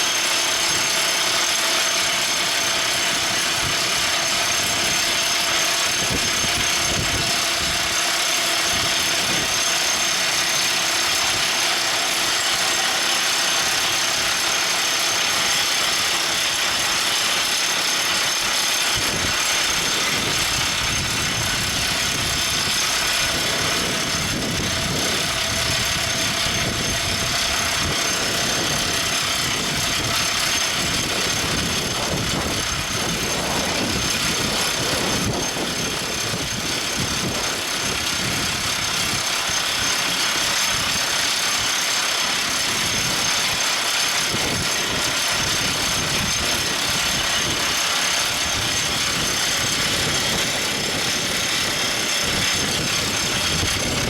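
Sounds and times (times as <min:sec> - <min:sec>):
drill rig engine and machinery: 0:00.0 - 0:54.0.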